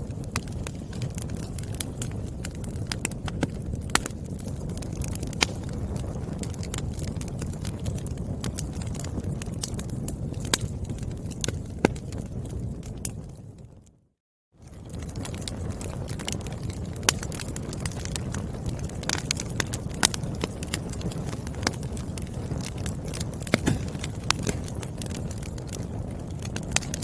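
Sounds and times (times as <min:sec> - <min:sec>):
fire crackling and popping: 0:00.0 - 0:14.0, 0:14.6 - 0:27.0
low rush of burning: 0:21.9 - 0:26.9.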